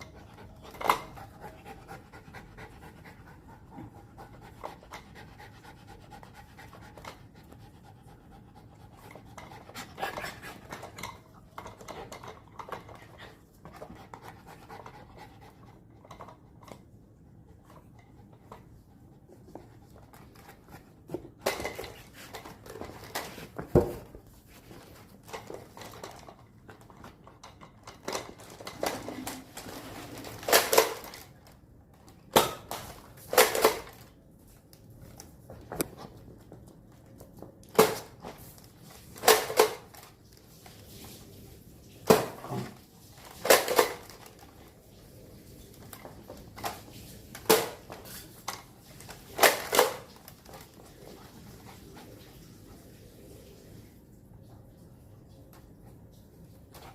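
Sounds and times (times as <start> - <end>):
dog panting: 0.0 - 10.9, 51.0 - 53.0.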